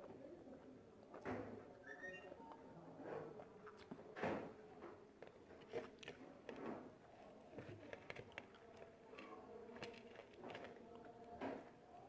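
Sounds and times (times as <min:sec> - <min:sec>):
person chewing: 0:05.2 - 0:06.6, 0:07.8 - 0:11.0.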